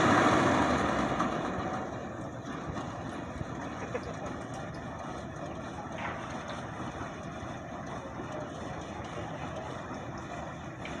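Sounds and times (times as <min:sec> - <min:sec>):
combine harvester engine drone: 0:00.0 - 0:11.0.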